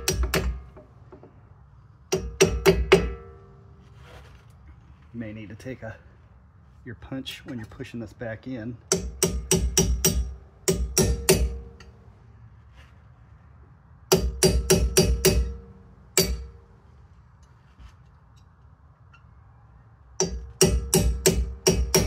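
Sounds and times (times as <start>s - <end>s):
hammer tapping metal: 0.0s - 1.3s, 2.1s - 3.6s, 8.9s - 12.0s, 14.1s - 16.7s, 20.2s - 22.0s.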